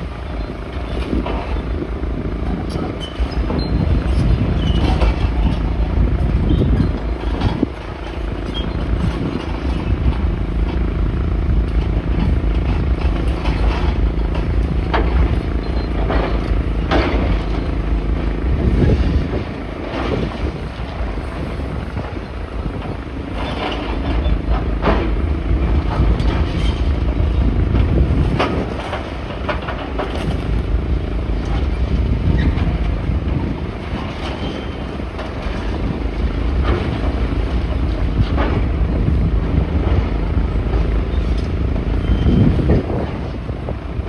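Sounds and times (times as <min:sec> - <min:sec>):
heavy engine running: 0:00.0 - 0:44.0
knocks and clanks: 0:11.6 - 0:17.8.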